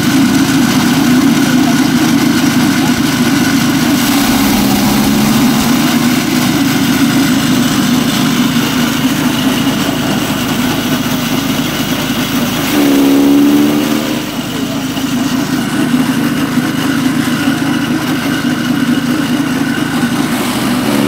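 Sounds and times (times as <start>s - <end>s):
chaff cutter humming: 3.4s - 14.6s.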